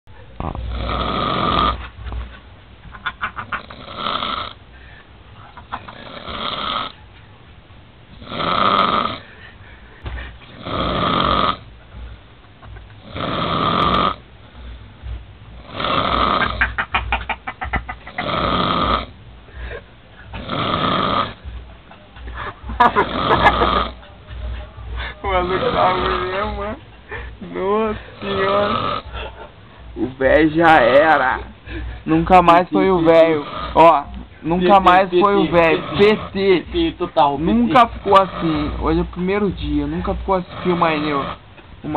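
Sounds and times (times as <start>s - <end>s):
man snoring heavily: 0.4s - 1.8s, 3.6s - 4.6s, 5.9s - 6.9s, 8.2s - 9.3s, 10.5s - 11.7s, 13.0s - 14.2s, 15.6s - 16.6s, 18.2s - 19.1s, 20.4s - 21.4s, 23.0s - 24.0s, 25.4s - 26.6s, 28.2s - 29.1s, 33.1s - 34.0s, 34.8s - 36.6s, 37.7s - 39.0s, 40.0s - 41.4s.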